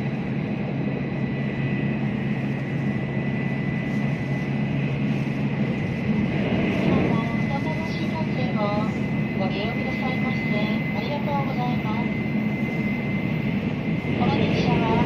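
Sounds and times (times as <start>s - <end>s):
train interior low rumble: 0.0s - 15.0s.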